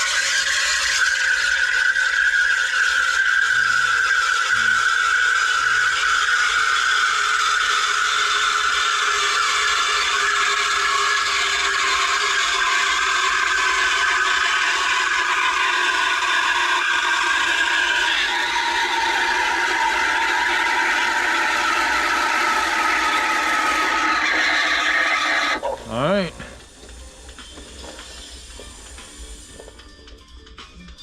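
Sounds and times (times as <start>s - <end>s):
steam wand frothing milk: 0.0s - 30.7s.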